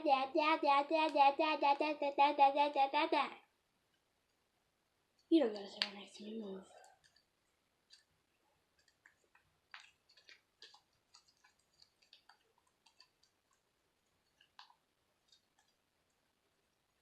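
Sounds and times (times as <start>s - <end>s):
slime clicking and popping: 8.7s - 13.6s.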